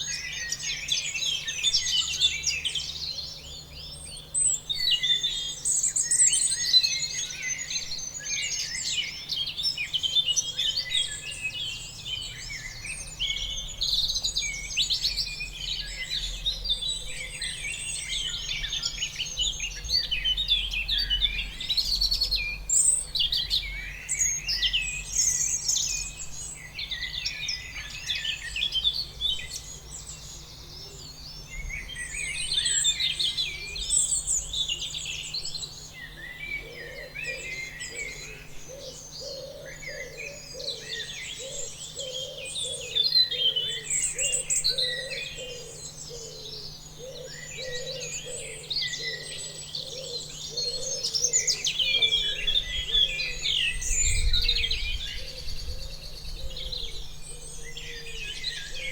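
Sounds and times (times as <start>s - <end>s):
birds chirping and singing: 0.0s - 58.9s.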